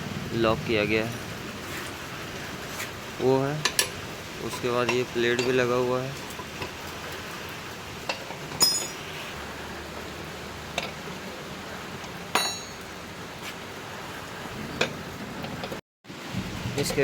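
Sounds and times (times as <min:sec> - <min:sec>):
metallic clinks of tools: 0:08.6 - 0:09.0.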